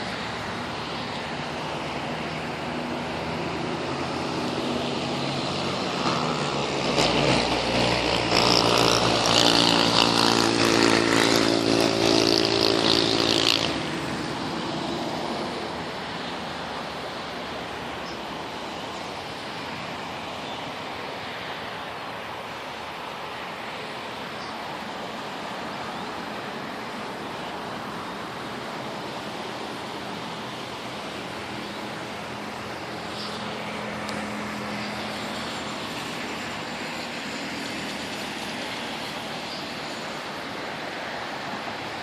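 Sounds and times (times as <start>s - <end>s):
vehicle engine passing close: 0.0s - 17.7s
distant road traffic: 0.0s - 42.0s.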